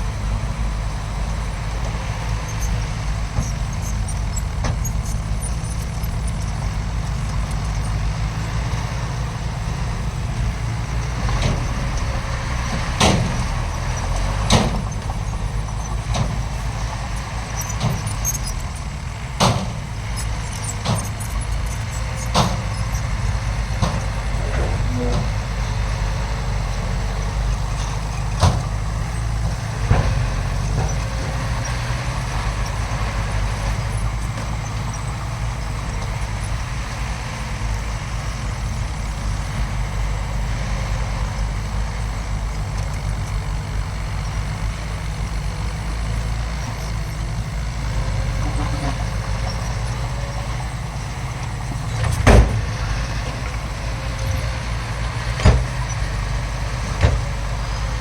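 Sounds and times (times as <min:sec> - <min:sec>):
heavy machinery engine rumble: 0:00.0 - 0:58.0
sharp knocks: 0:11.2 - 0:18.8, 0:19.4 - 0:23.0.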